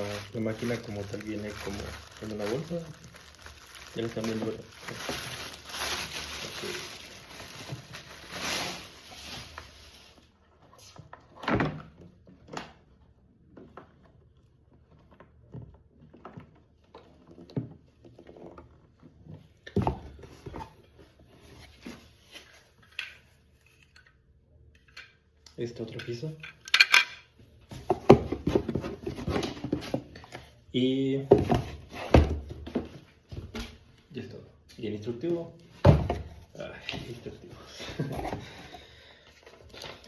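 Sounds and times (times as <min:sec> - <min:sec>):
plastic bag rustling: 0:00.0 - 0:10.4
plastic parts handled and set down: 0:25.9 - 0:30.6, 0:35.8 - 0:38.7.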